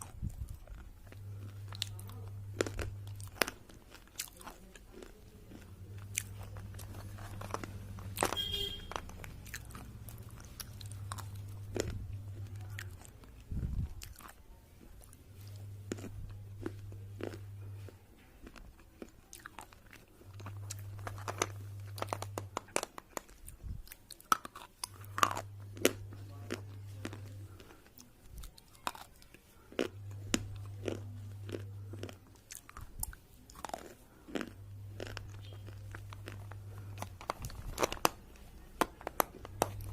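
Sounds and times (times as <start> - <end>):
low hum: 0.0 - 4.1, 4.8 - 18.8, 20.1 - 22.7, 24.8 - 28.5, 34.0 - 39.9
crunching and chewing: 0.0 - 39.9.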